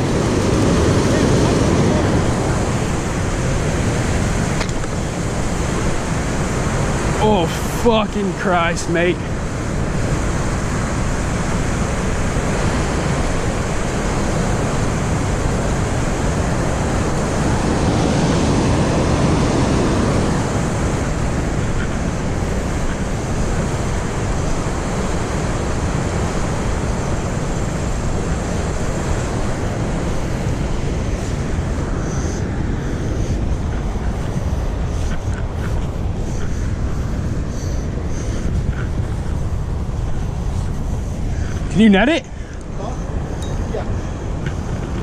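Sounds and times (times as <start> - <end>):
water rushing through spillway: 0.0 - 32.0.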